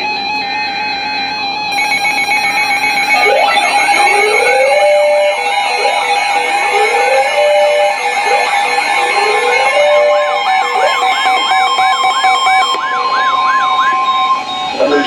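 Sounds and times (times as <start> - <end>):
steady electronic alarm tones: 0.0 - 15.0
rising siren-like sweep: 1.7 - 15.0.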